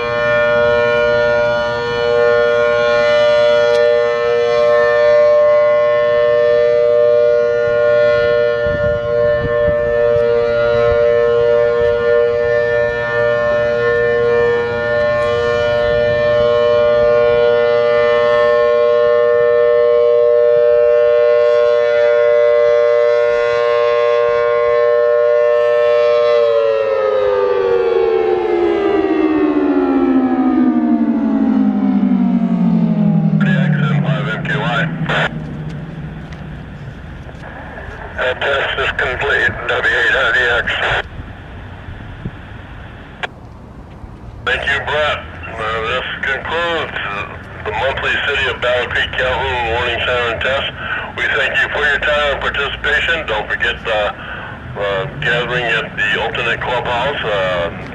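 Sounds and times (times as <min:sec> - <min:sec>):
warning siren two-note chord: 0:00.0 - 0:37.0
siren winding down: 0:00.0 - 0:43.3, 0:44.5 - 0:57.9.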